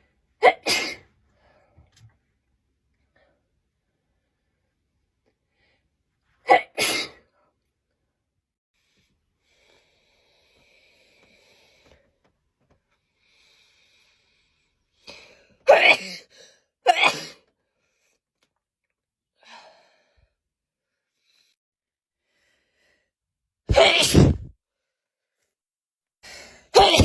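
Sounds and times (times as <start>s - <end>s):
person sneezing: 0.4s - 1.0s, 6.5s - 7.2s, 15.7s - 16.3s, 16.9s - 17.4s, 23.7s - 24.5s, 26.8s - 27.0s.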